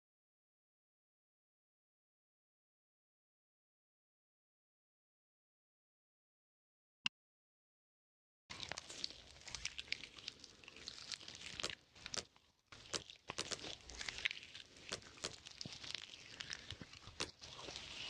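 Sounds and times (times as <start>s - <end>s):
slime crackling and popping: 8.5s - 18.0s.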